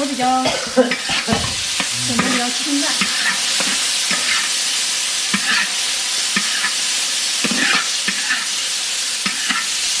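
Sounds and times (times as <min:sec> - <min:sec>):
food sizzling in hot oil: 0:00.0 - 0:10.0
spatula scraping a wok: 0:00.9 - 0:09.9.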